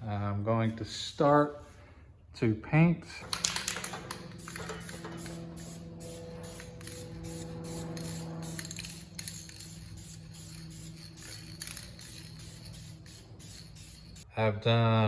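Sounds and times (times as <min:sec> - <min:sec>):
steady low hum: 0:03.2 - 0:14.3
spray paint hissing: 0:03.3 - 0:14.3.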